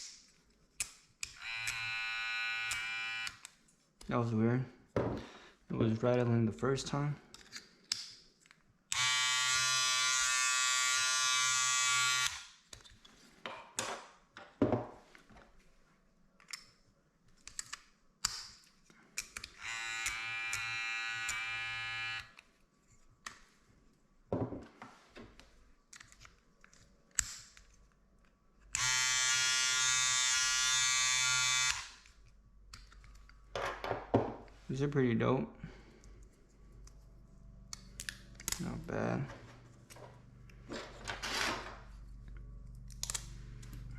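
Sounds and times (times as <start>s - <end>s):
electric hair clippers running: 1.4s - 3.3s, 9.0s - 12.4s, 19.6s - 22.2s, 28.8s - 31.9s.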